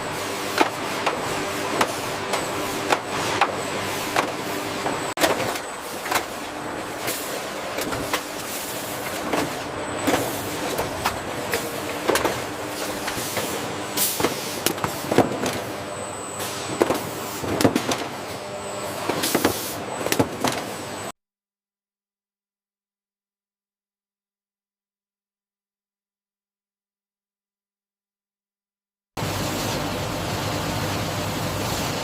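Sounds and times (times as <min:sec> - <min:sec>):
machinery humming and whining: 0:00.0 - 0:21.1, 0:29.2 - 0:32.0.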